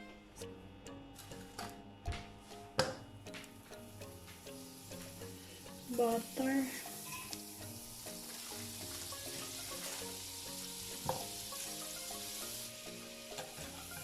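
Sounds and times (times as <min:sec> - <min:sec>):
background music: 0:00.0 - 0:14.0
butter sizzling in a pot: 0:04.0 - 0:14.0.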